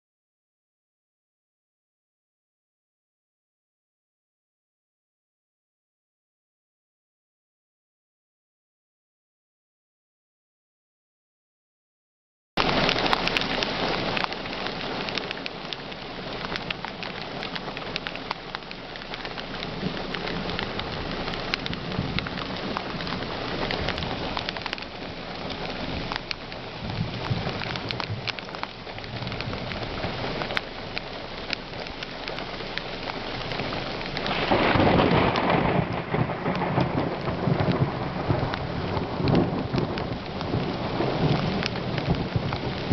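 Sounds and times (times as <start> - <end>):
heavy rain: 12.6 - 42.9
thunder rumble: 12.6 - 42.9.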